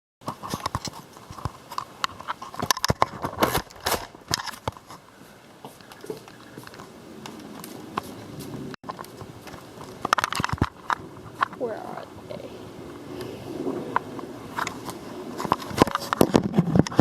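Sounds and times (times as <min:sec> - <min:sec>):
sharp clicks and knocks: 0:00.2 - 0:05.0, 0:08.8 - 0:11.6
steady hum: 0:00.3 - 0:17.0.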